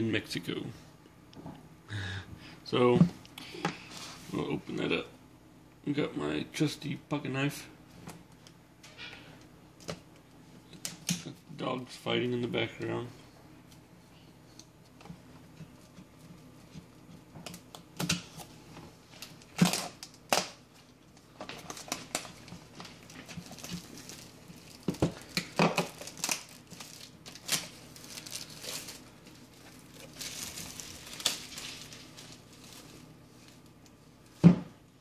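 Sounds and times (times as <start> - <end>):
plastic wrap crinkling and tearing: 19.1 - 34.4.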